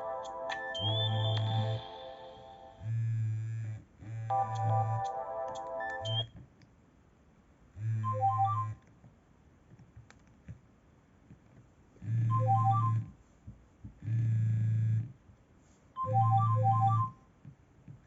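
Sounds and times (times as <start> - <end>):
phone ringtone melody: 0.0 - 2.9, 4.3 - 6.2, 16.0 - 17.1
phone vibration buzz: 2.8 - 5.0, 7.8 - 8.8, 12.1 - 13.1, 14.1 - 15.1.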